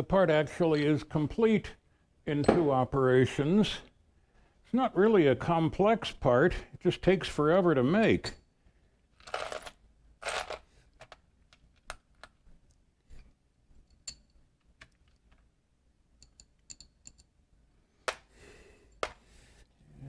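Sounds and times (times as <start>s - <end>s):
small metallic clinks: 13.8s - 14.4s, 16.2s - 17.3s.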